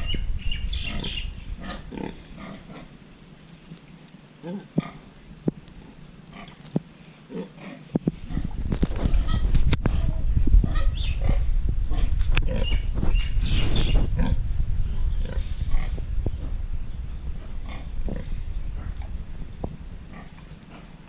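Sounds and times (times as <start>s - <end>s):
pig grunting: 0.8s - 2.9s, 4.4s - 5.1s, 7.3s - 8.6s, 17.6s - 19.1s.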